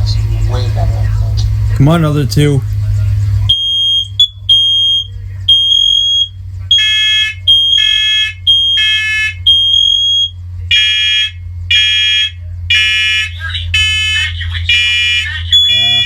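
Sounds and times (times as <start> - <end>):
lower-toned smoke alarm beeps: 3.5 - 13.2, 14.8 - 16.0
smoke alarm high beeps: 3.5 - 16.0.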